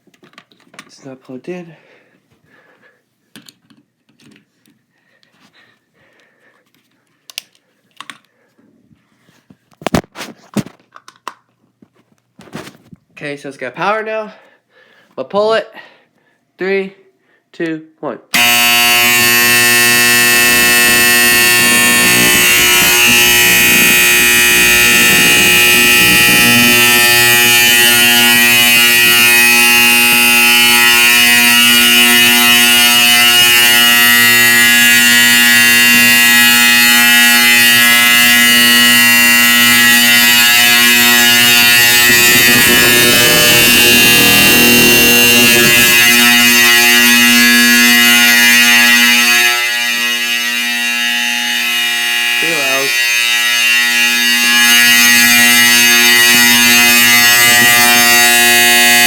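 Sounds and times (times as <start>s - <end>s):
fire alarm horn buzzing: 18.3s - 59.0s.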